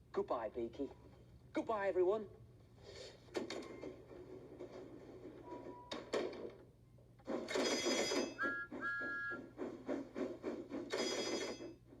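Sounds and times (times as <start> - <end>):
steam engine chuffing: 7.3 - 12.0
steam whistle toots: 8.3 - 9.6.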